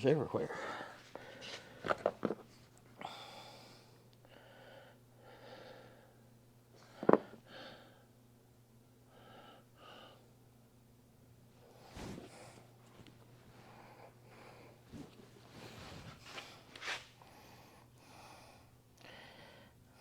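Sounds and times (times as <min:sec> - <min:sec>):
faint steady hum: 0:00.0 - 0:20.0
man breathing heavily: 0:00.4 - 0:02.0, 0:03.0 - 0:08.1, 0:09.1 - 0:10.3, 0:13.5 - 0:20.0.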